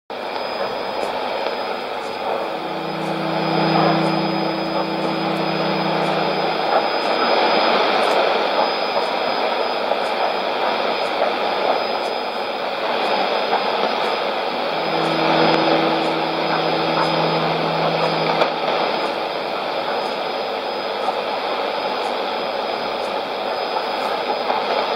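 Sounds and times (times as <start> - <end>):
low steady tone: 1.8 - 8.2, 14.5 - 20.2
thin high whistle: 1.9 - 8.1, 14.6 - 19.8.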